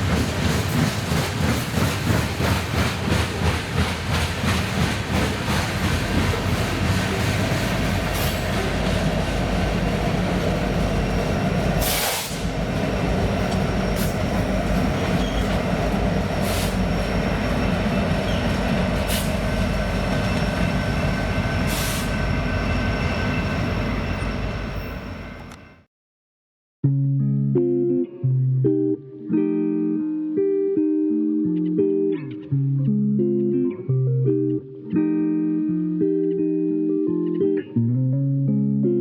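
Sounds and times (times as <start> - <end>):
train wheels on rails: 0.0 - 25.9.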